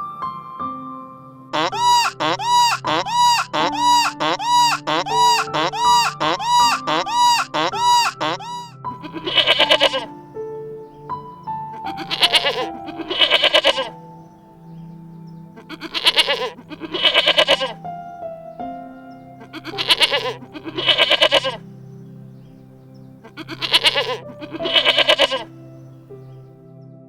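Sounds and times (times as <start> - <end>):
background music: 0.0 - 27.0
goat bleating: 1.6 - 10.1, 11.8 - 14.0, 15.6 - 17.8, 19.4 - 21.6, 23.2 - 25.5.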